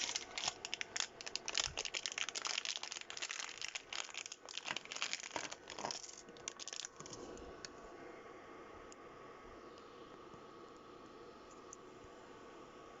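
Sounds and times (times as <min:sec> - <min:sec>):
packaging crinkling: 0:00.0 - 0:07.3.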